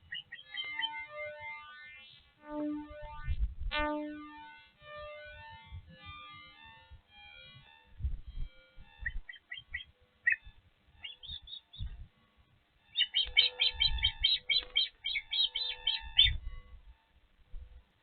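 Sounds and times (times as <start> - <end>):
osprey chirping: 0.0 - 2.1, 7.4 - 12.1, 12.8 - 17.0
low thumps: 8.0 - 9.3.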